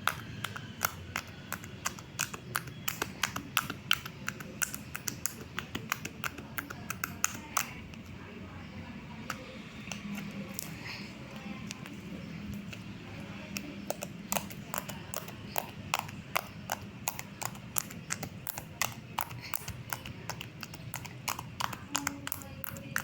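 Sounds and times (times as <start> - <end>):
slime clicking pops: 0.0 - 7.7.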